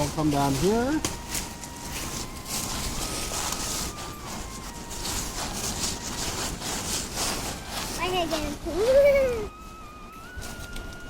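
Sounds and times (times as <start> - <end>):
footsteps through dry leaves: 0.0 - 10.9.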